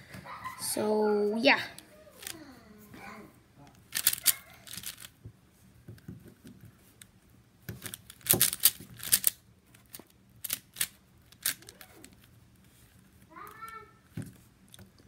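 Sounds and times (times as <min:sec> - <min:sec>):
puzzle cube layers clacking: 0:03.9 - 0:05.1, 0:07.8 - 0:12.2.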